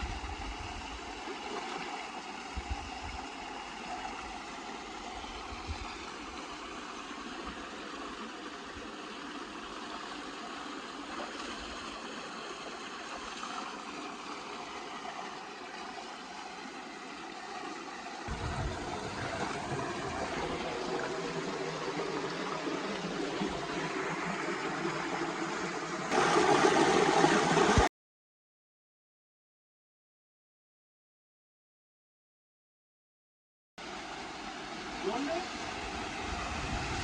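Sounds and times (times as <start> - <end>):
stream water gurgling over rocks: 0.0 - 27.9, 33.8 - 37.0
low rumble: 18.3 - 21.2.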